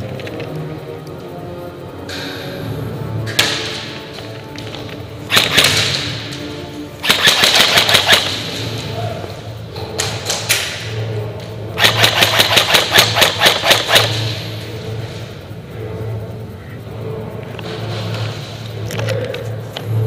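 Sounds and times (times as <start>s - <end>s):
airsoft guns firing bursts: 5.3s - 6.2s, 7.0s - 8.6s, 11.8s - 14.4s.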